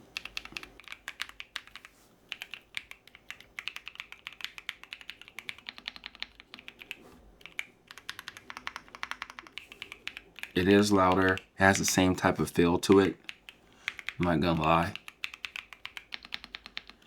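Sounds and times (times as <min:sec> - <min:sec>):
typing on mechanical keyboard: 0:00.0 - 0:17.0.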